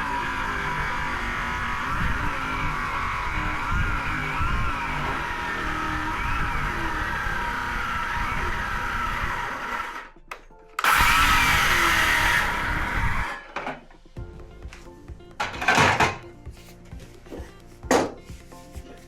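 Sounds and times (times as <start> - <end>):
power saw cutting wood: 0.0 - 10.2, 10.8 - 13.8
background music: 0.0 - 19.0.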